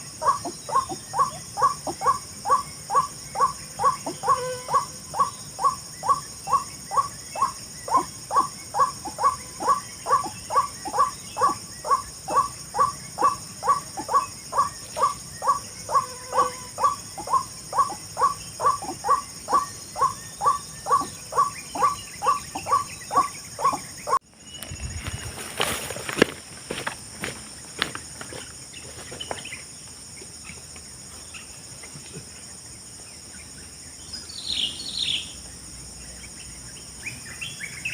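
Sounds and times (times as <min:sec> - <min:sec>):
bird harsh kwak calls: 0:00.0 - 0:24.2.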